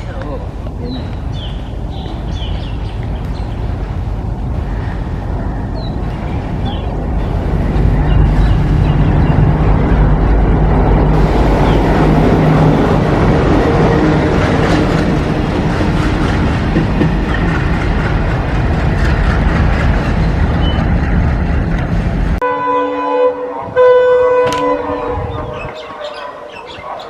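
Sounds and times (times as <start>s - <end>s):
diesel locomotive engine rumble: 0.0s - 25.8s.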